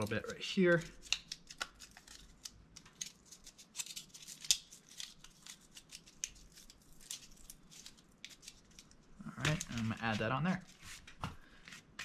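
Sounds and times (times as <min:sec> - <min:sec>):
cardboard crunching and crinkling: 0:09.3 - 0:11.1.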